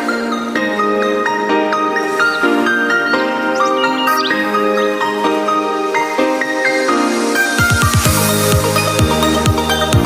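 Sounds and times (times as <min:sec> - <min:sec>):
electronic synth melody: 0:00.7 - 0:06.3.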